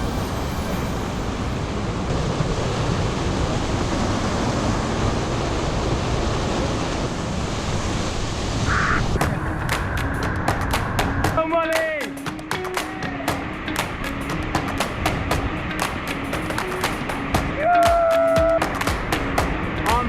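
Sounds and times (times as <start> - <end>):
river whitewater rushing: 0.0 - 20.0.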